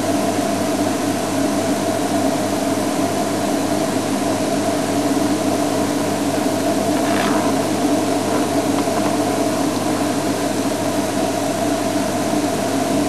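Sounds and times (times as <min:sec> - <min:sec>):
vehicle engine idling: 0:06.4 - 0:11.8.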